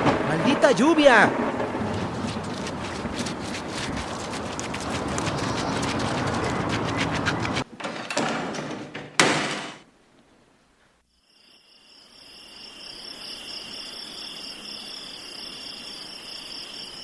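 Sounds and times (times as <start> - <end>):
crickets chirping: 0.0 - 7.6, 11.1 - 17.0.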